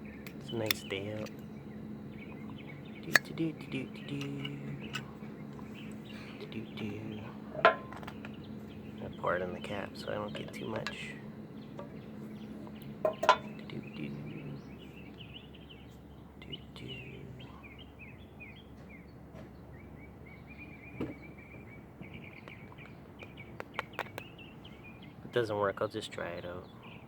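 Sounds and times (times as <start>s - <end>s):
songbirds chirping: 0.0s - 27.0s
sharp handling clicks: 0.2s - 1.5s, 3.0s - 6.0s.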